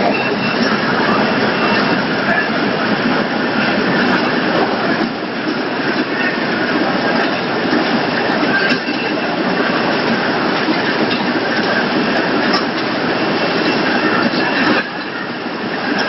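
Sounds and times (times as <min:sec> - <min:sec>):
processing machinery din: 0:00.0 - 0:16.0.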